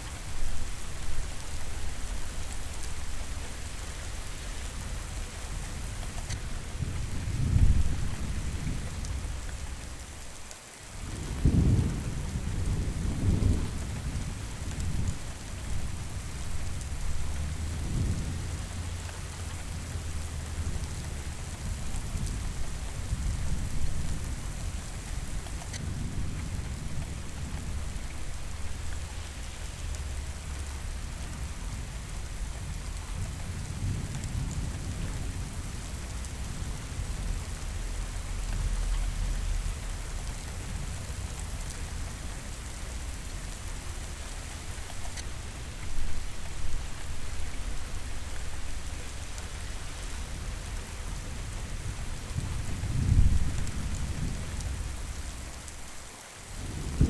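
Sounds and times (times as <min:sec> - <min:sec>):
heavy rain: 0:00.0 - 0:57.0
rolling thunder: 0:06.8 - 0:09.4, 0:11.0 - 0:19.0, 0:50.4 - 0:55.8, 0:56.5 - 0:57.0.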